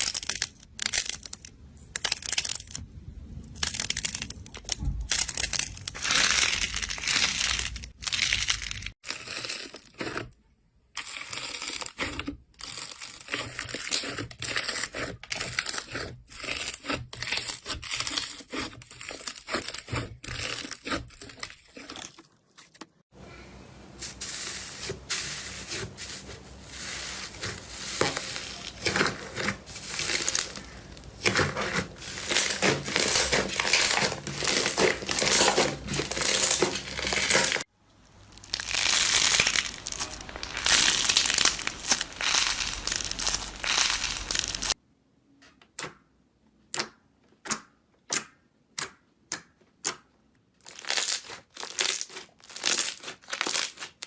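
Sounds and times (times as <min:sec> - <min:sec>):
slime crackling and popping: 0:00.0 - 0:02.8, 0:03.5 - 0:10.2, 0:27.3 - 0:44.8, 0:50.6 - 0:54.0.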